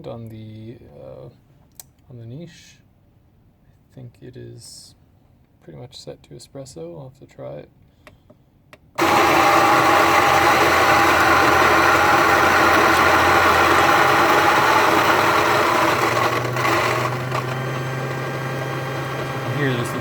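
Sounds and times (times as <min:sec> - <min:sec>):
coffee grinder whirring: 0:09.0 - 0:20.0.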